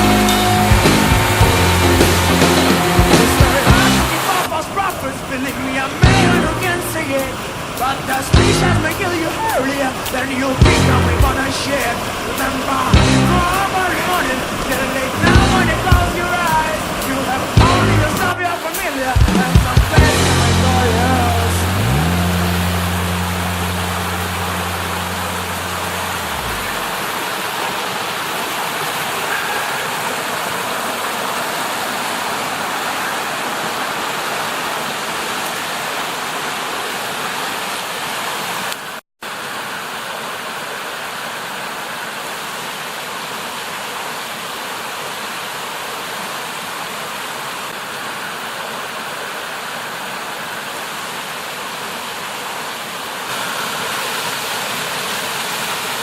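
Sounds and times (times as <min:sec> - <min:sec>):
water rushing over rocks: 0:00.0 - 0:56.0
low hum: 0:20.0 - 0:27.3.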